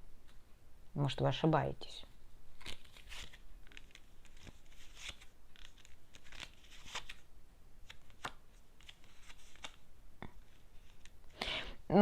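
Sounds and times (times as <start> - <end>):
cards being shuffled: 2.5 - 11.2.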